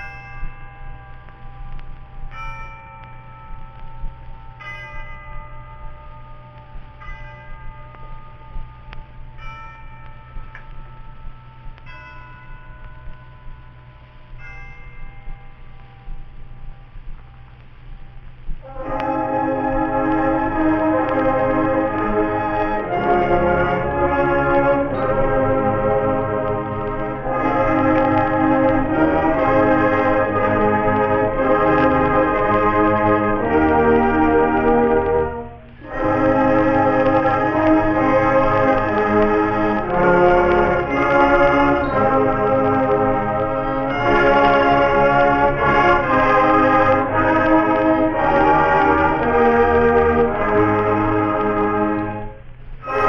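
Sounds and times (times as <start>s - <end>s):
school band playing brass chords: 18.6s - 53.0s.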